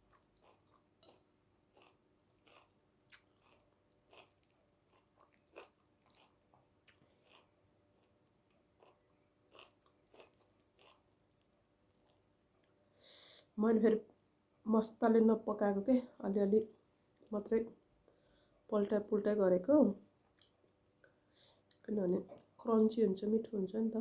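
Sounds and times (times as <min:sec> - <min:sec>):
close chewing with wet clicks: 0:00.0 - 0:13.0, 0:20.3 - 0:21.1.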